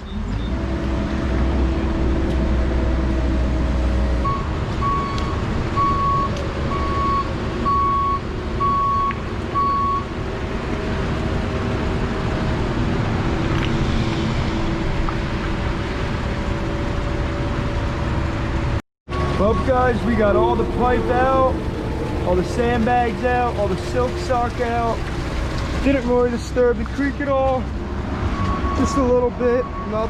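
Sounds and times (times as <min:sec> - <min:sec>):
diesel engine running: 0:00.0 - 0:30.0
backup alarm beeping: 0:04.2 - 0:10.1, 0:19.1 - 0:21.6, 0:28.3 - 0:30.0.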